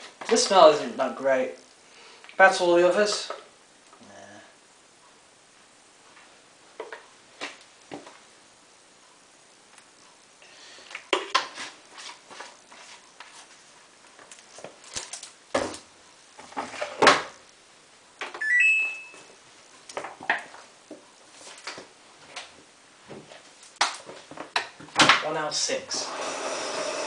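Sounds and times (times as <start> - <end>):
short stepped electronic beep: 18.4 - 19.3.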